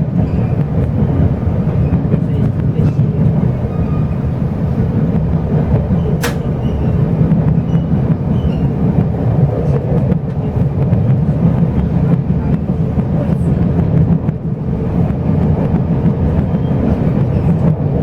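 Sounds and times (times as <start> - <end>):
train wheels rumbling on rails: 0.0 - 18.0
sharp click: 6.2 - 6.5.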